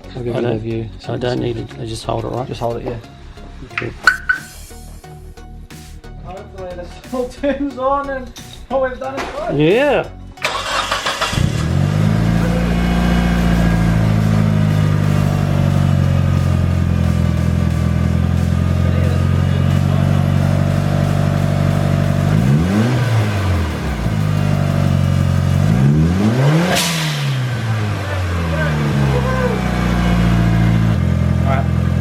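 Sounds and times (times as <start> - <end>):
car engine idling and revving: 10.4 - 32.0.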